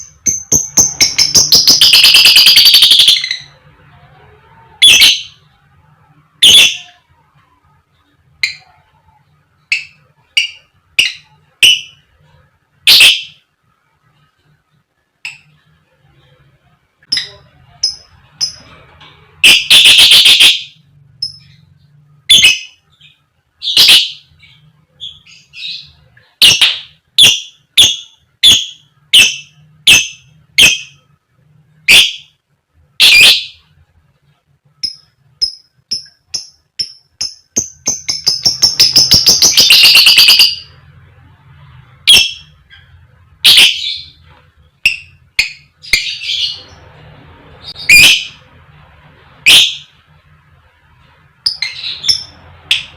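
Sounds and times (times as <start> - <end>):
lovebird calling: 0.0 - 3.6, 34.8 - 40.7, 47.6 - 48.4.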